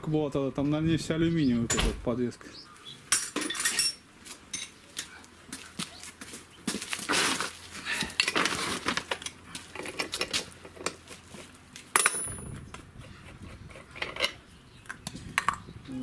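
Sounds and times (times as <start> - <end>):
metal tools clinking: 3.1 - 5.1, 11.9 - 12.5.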